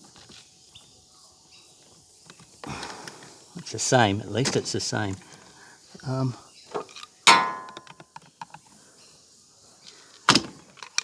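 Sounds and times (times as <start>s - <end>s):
sharp knock: 7.3s - 7.8s
metal object clanging: 7.3s - 7.9s.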